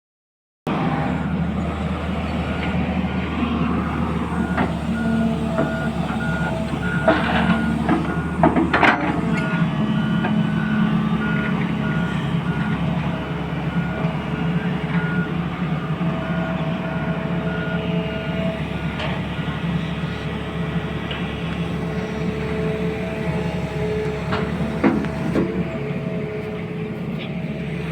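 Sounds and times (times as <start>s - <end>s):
vehicle engine running: 0.7s - 27.9s
reversing alarm beeping: 1.0s - 20.8s.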